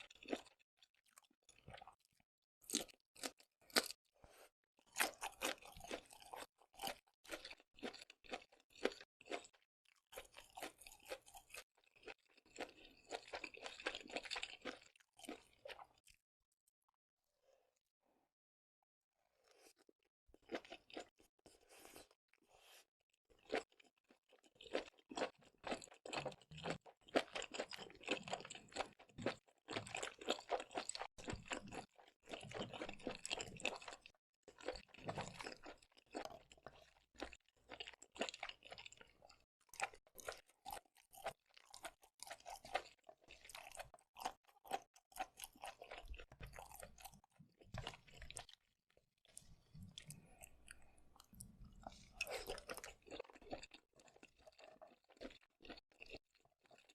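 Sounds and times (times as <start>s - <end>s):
crunchy chewing: 0.1s - 16.2s, 19.5s - 56.9s.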